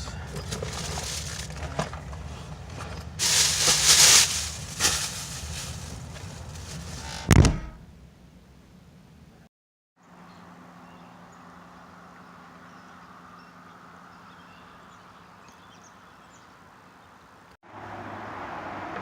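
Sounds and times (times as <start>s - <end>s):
gear rustling and knocking: 0.2s - 7.8s
heavy bump: 2.8s - 7.9s.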